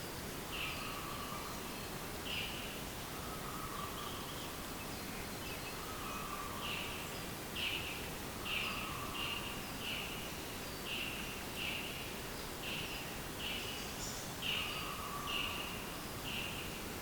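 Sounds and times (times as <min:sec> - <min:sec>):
steady outdoor hiss: 0:00.0 - 0:17.0.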